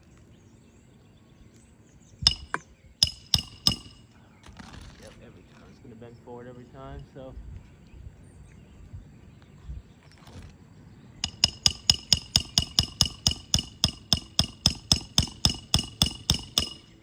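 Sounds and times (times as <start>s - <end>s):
hammer blows on metal tool: 2.3s - 4.2s, 11.2s - 17.0s.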